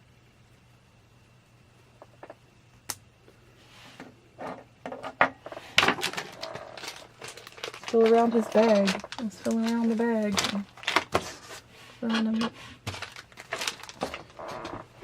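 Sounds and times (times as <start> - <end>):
plastic wrapper crinkling: 5.7 - 15.0.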